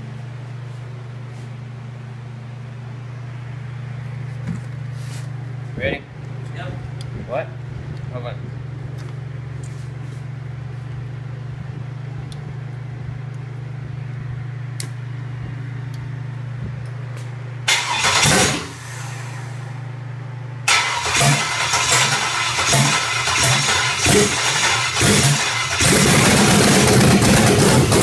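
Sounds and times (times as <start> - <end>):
steady low hum: 0.0 - 28.0
engine starting and running: 17.6 - 19.8, 20.6 - 28.0.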